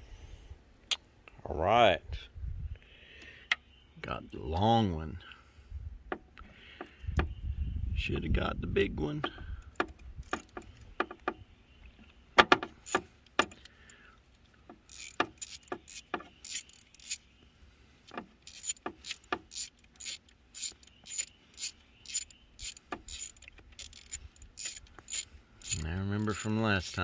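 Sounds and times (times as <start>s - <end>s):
hand ratchet clicking: 9.8s - 10.7s, 14.9s - 17.2s, 18.4s - 27.0s.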